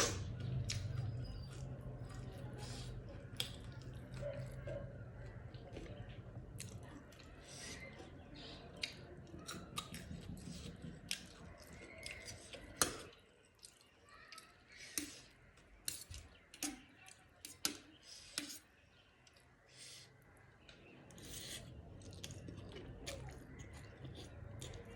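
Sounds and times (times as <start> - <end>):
person chewing crunchy food: 0.0 - 14.0, 20.9 - 24.9.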